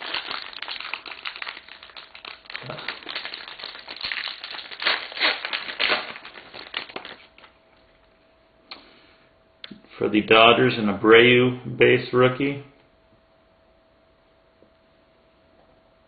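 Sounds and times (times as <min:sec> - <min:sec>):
wrapper crinkling and tearing: 0:00.0 - 0:07.6.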